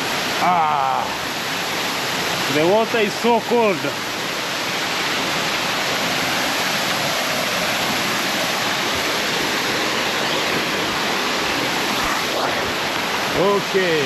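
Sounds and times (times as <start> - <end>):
small waterfall splashing: 0.0 - 14.0.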